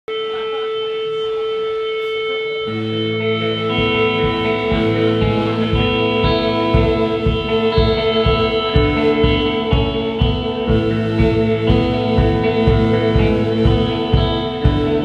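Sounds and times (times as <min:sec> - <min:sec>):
held guitar note: 0:00.1 - 0:15.0
bass notes: 0:02.7 - 0:15.0
drum beat: 0:03.4 - 0:15.0.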